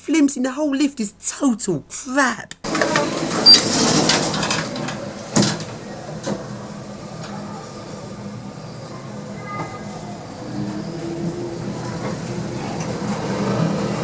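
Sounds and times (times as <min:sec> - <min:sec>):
lift doors sliding shut: 0:02.7 - 0:14.0
lift running low hum: 0:03.2 - 0:14.0.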